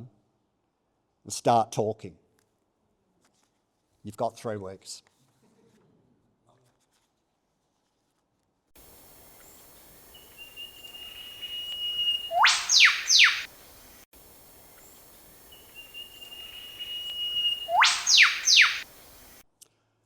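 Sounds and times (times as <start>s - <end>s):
bird quick falling notes: 10.2s - 13.5s, 15.6s - 18.9s
bird whistle ending in whip-crack: 10.4s - 13.5s, 15.8s - 18.9s.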